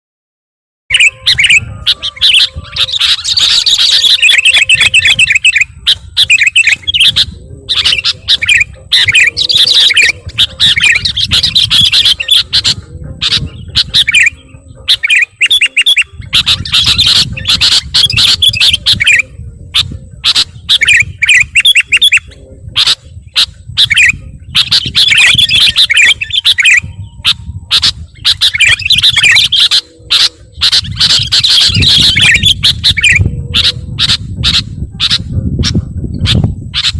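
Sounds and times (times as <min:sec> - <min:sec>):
bulbul chattering call: 0:00.9 - 0:36.9.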